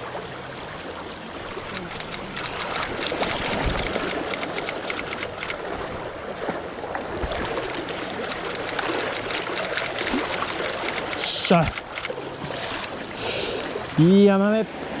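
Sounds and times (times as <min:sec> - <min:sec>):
quick light ticks: 0:01.7 - 0:05.6, 0:08.2 - 0:12.1.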